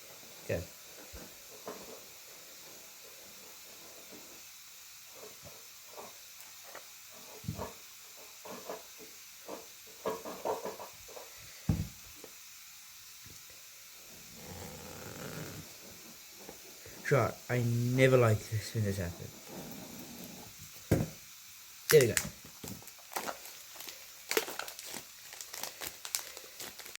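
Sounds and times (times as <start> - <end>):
packaging clicks and crinkles: 21.9 - 27.0.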